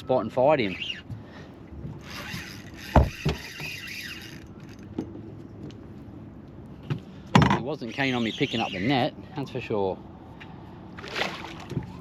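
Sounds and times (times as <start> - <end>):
gear scraping rattle: 2.0 - 4.8.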